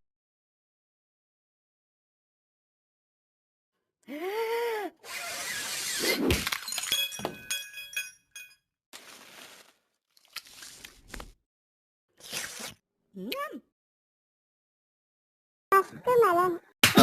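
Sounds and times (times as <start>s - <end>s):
clattering crash of breaking glass: 6.4s - 8.6s
sharp knocks and ringing pieces: 6.7s - 8.6s.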